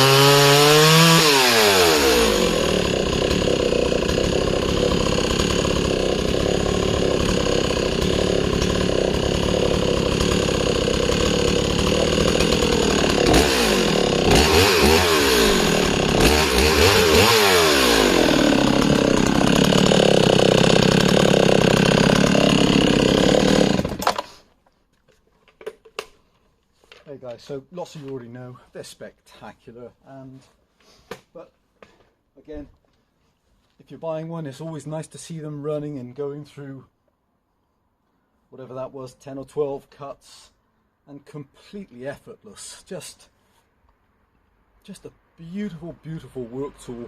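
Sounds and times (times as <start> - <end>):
chainsaw running: 0.0 - 24.4.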